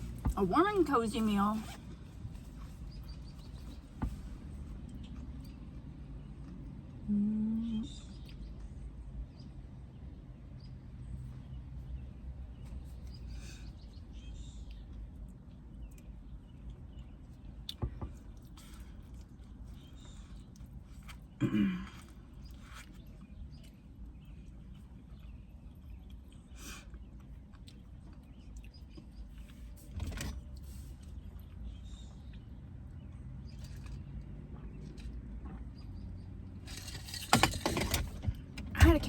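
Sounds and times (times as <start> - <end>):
low steady background hum: 0.0 - 39.0
soft chewing: 2.0 - 9.0, 11.2 - 36.6
person humming: 7.1 - 7.8.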